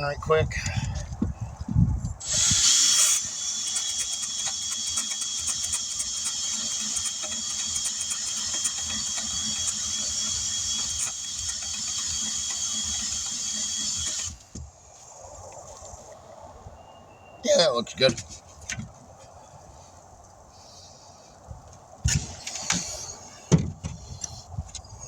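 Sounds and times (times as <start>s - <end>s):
wire wheel tool whining and scratching: 2.2s - 14.5s.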